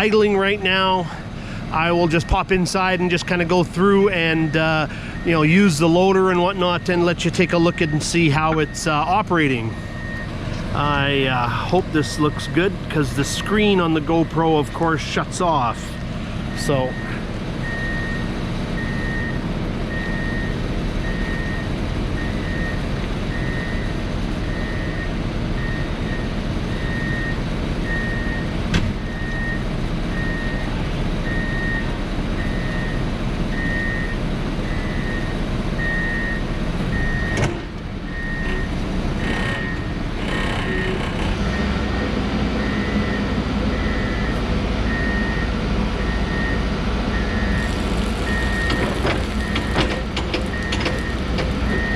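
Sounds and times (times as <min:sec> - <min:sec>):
diesel engine idling: 0:00.0 - 0:37.2, 0:41.4 - 0:51.9
high-pitched alarm beeping: 0:47.2 - 0:51.9.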